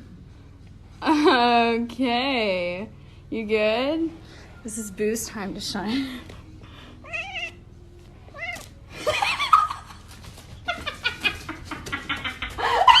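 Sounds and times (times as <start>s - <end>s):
pet animal crying: 7.0s - 7.7s.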